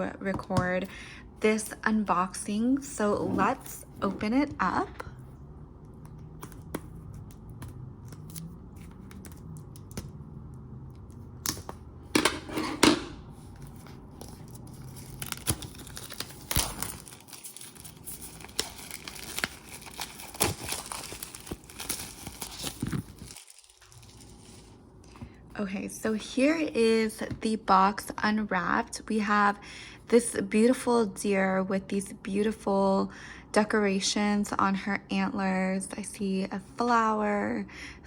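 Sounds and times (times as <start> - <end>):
plastic wrapping crinkling and tearing: 13.8 - 24.9.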